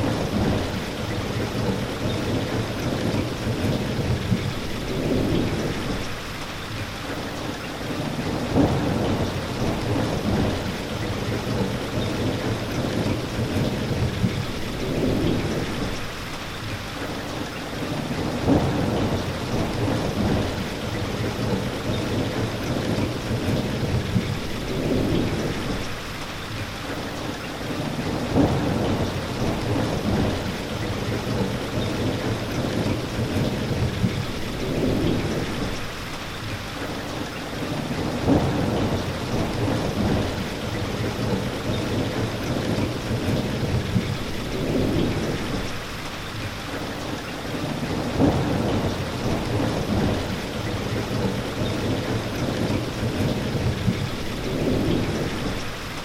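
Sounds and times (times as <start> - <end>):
rolling thunder rumble: 0.0 - 6.7, 7.9 - 16.6, 17.8 - 26.5, 27.7 - 36.5, 37.6 - 46.4, 47.4 - 56.0
heavy rain: 0.0 - 56.0.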